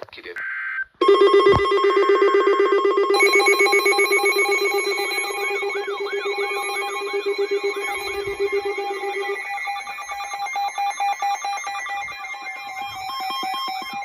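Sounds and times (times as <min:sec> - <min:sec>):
electronic alert tone: 0:01.0 - 0:14.0
warbling tone: 0:01.1 - 0:14.0
fast electronic pulsing: 0:03.1 - 0:14.0.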